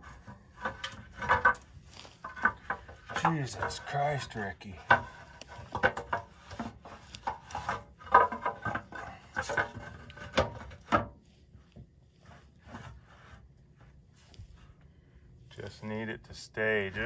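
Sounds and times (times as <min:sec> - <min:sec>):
metal tools clinking and scraping: 0:02.2 - 0:05.0.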